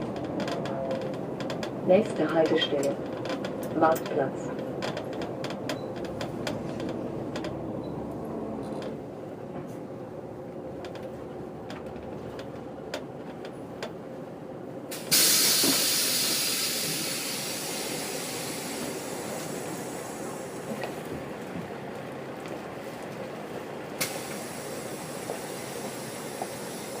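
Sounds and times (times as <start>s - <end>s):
rattles and clicks: 0.0s - 9.0s, 10.8s - 14.0s
bus engine running: 0.0s - 27.0s
compressed air hiss: 14.9s - 20.6s, 24.0s - 27.0s.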